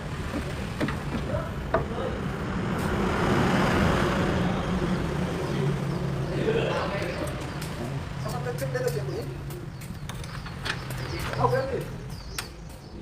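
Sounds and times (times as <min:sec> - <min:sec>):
vehicle passing by: 0:00.0 - 0:09.6.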